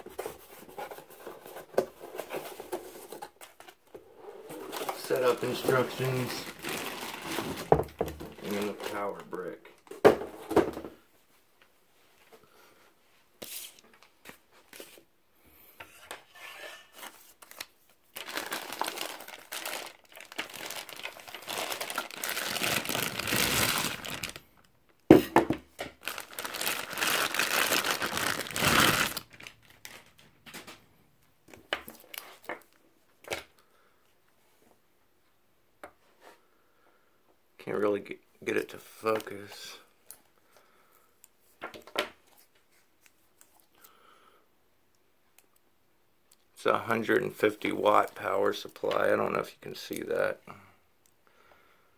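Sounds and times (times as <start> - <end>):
packaging crinkling and tearing: 4.6 - 7.7, 8.3 - 9.3, 17.4 - 24.6, 26.0 - 30.2.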